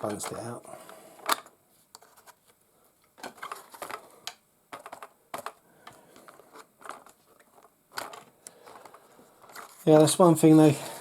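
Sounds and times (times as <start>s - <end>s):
plastic toy truck clicks and rattles: 3.2s - 10.1s.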